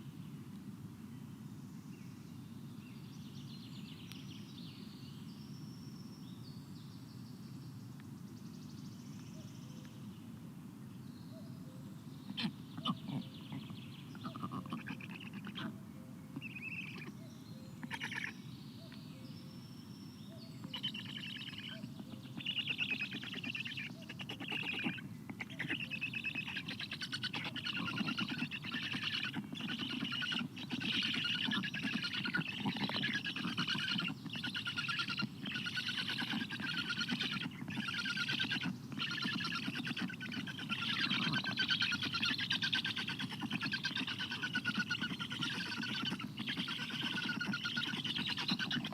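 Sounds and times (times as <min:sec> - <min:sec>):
stork chicks begging rasp: 0:12.3 - 0:15.7, 0:16.4 - 0:17.2, 0:17.8 - 0:18.3, 0:20.6 - 0:48.9.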